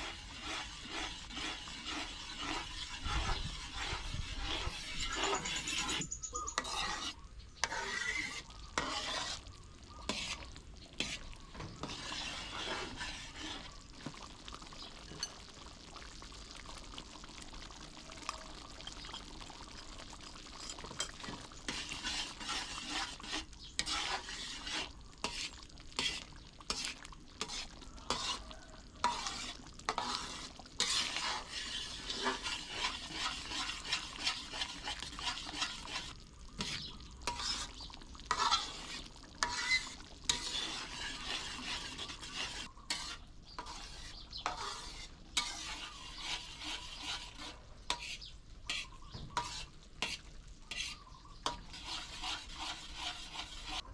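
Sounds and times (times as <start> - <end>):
food stirred and scraped in pan: 0.0 - 15.7, 18.8 - 53.9
frying sizzle: 8.8 - 48.1.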